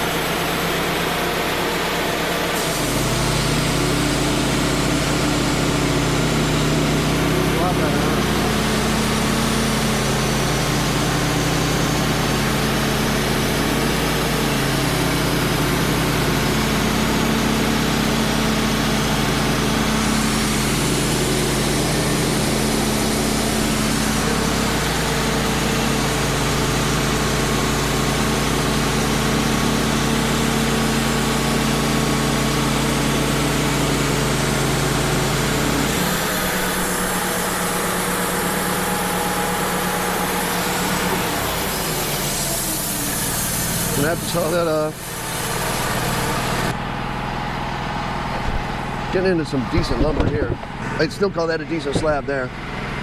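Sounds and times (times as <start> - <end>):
band sawmill cutting log: 0.0 - 53.0.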